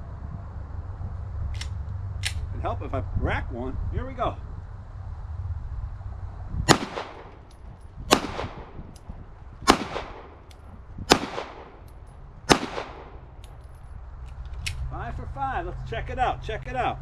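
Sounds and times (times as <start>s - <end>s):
pistol shots with echo: 6.7s - 7.5s, 8.1s - 8.9s, 9.6s - 13.4s.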